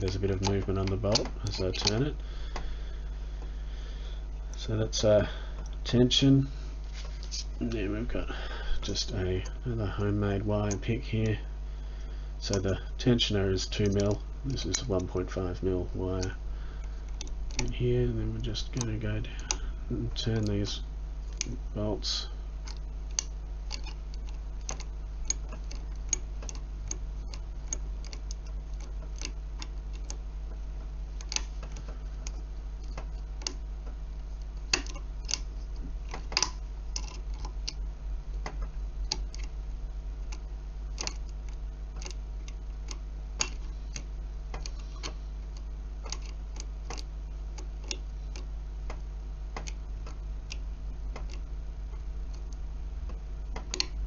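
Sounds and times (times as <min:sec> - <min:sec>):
steady low hum: 0:00.0 - 0:54.0
lock pick clicking in lock: 0:41.0 - 0:42.2, 0:46.0 - 0:48.5.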